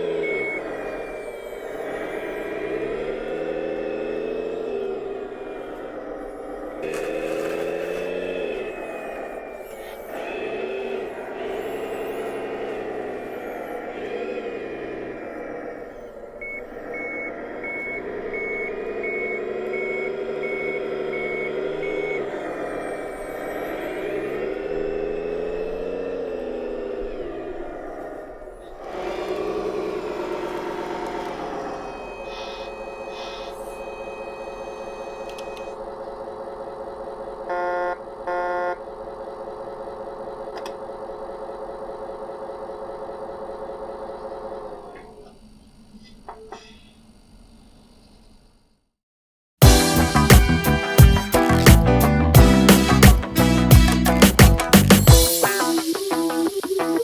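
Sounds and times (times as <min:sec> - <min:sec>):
reversing alarm beeps: 0:00.0 - 0:28.1, 0:28.8 - 0:36.4, 0:37.4 - 0:38.9
simulated diesel engine: 0:00.0 - 0:48.9, 0:49.6 - 0:57.0.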